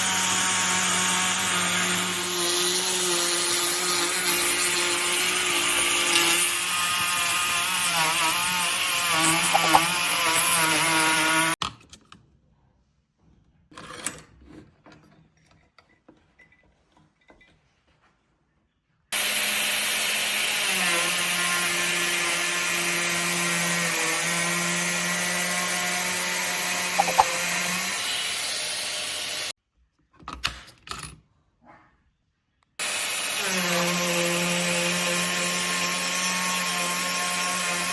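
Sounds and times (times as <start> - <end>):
trim router cutting wood: 0.0 - 11.6, 19.2 - 29.5, 32.8 - 37.9.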